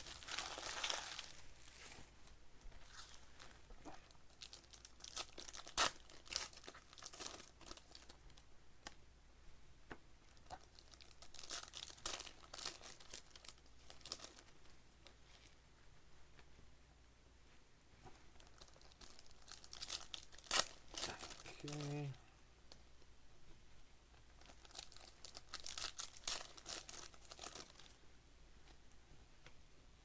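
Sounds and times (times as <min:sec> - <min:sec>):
plastic wrappers tearing and crinkling: 0:00.0 - 0:01.9, 0:04.3 - 0:08.4, 0:10.4 - 0:14.5, 0:18.4 - 0:22.1, 0:24.4 - 0:28.0.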